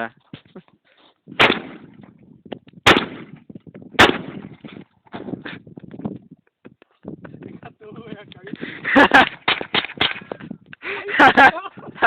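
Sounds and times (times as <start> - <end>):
shotgun shots: 1.4 - 2.0, 2.8 - 3.4, 4.0 - 4.6.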